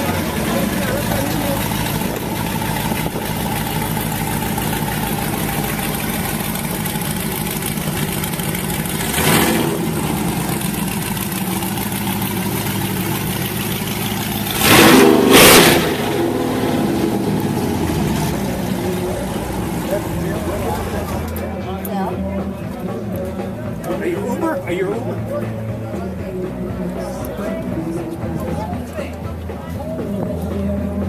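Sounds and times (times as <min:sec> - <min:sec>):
car engine revving: 0:00.0 - 0:21.5
car engine idling: 0:00.0 - 0:31.0.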